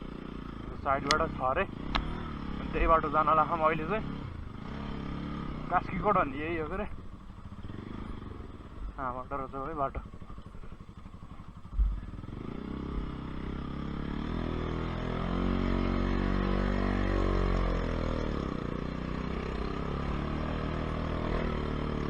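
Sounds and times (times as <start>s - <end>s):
motorcycle engine pulling uphill: 0.0s - 22.0s
thump: 11.8s - 12.0s.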